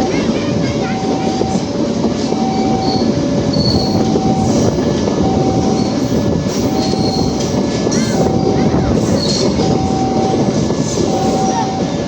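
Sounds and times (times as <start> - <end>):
two-tone electronic warning: 0.0 - 7.5, 9.4 - 12.0
train wheels rumbling on rail: 0.0 - 12.0
wheel squeals: 2.4 - 4.8, 5.4 - 11.8.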